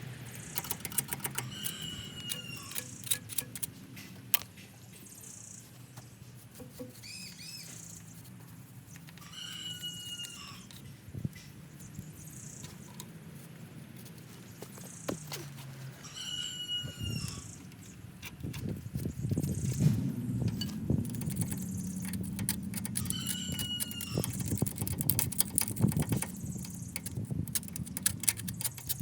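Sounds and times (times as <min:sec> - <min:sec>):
bird calling: 0:00.4 - 0:03.2, 0:06.6 - 0:08.2, 0:14.3 - 0:18.3, 0:19.1 - 0:27.1.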